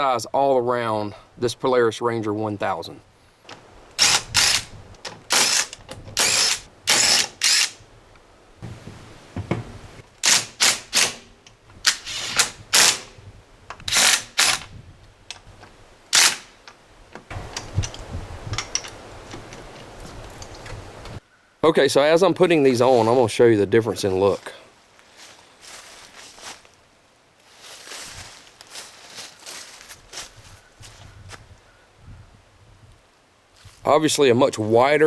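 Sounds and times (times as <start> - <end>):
impact wrench rattling bursts: 3.5 - 7.8, 9.4 - 14.7, 16.1 - 19.6.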